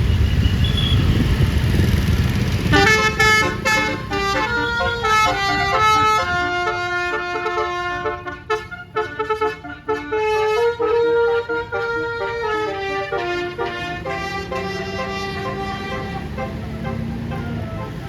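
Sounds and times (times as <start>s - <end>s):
low engine rumble: 1.0s - 18.0s
musical bus air horn tune: 2.6s - 18.0s.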